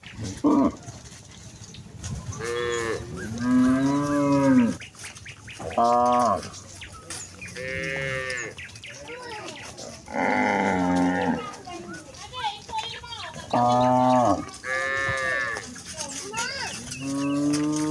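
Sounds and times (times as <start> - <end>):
cattle mooing: 2.3 - 4.8, 5.6 - 6.6, 7.5 - 8.6, 10.0 - 11.7, 13.4 - 16.1, 16.7 - 17.9.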